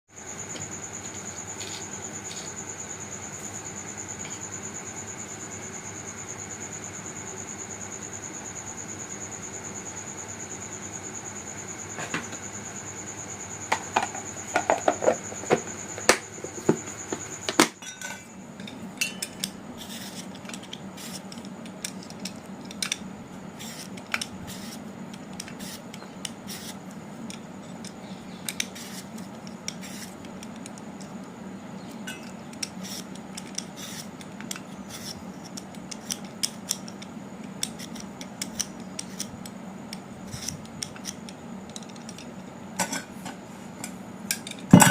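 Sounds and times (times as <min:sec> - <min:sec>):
low steady hum: 0:00.2 - 0:44.9
utensils and dishes clinking: 0:17.7 - 0:19.5, 0:42.8 - 0:43.1.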